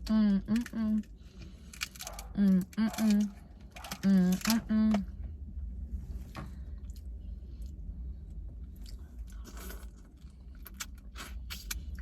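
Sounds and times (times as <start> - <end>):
low steady hum: 0.0 - 12.0
chewing and mouth sounds: 8.6 - 12.0.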